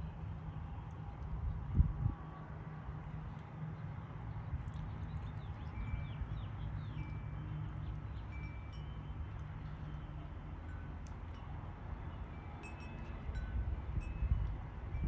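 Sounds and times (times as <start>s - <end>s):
wind chimes ringing: 8.3s - 15.0s.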